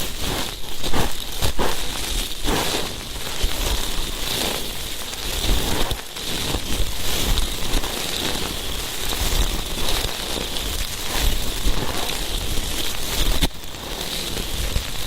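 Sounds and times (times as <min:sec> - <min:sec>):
ear-cleaning tool scratching microphone: 0:00.0 - 0:03.0.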